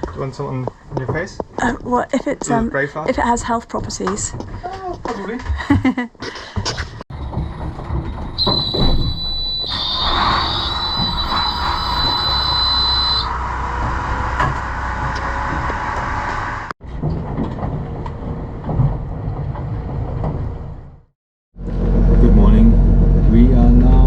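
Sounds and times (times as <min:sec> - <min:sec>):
diesel engine running: 0:07.1 - 0:16.7, 0:21.6 - 0:24.0
steady high-pitched tone: 0:08.4 - 0:13.4.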